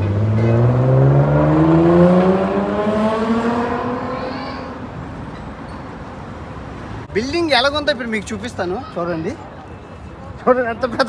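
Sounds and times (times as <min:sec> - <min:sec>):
vehicle engine accelerating past: 0:00.0 - 0:05.0.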